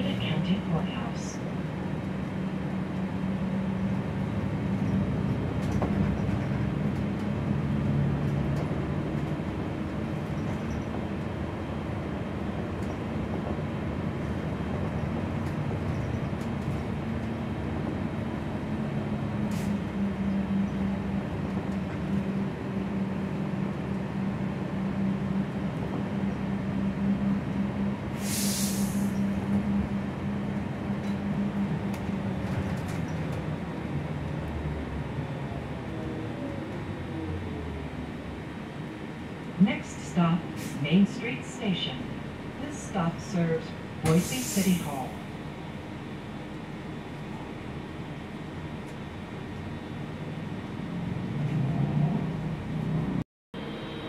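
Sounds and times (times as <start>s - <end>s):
bus engine and road drone: 0.0s - 54.0s
air hiss burst: 28.2s - 29.2s, 44.1s - 44.9s.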